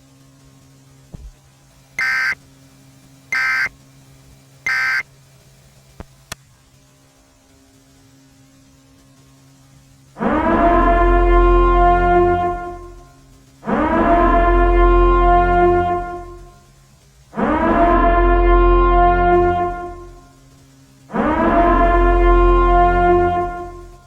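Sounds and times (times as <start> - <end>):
steady low hum: 0.0 - 24.0
buzzy data bursts: 2.0 - 2.4, 3.3 - 3.7, 4.7 - 5.1
loud low horn-like tone: 2.0 - 2.4, 3.4 - 3.7, 4.7 - 5.0, 10.2 - 16.7, 17.3 - 20.4, 21.1 - 24.0.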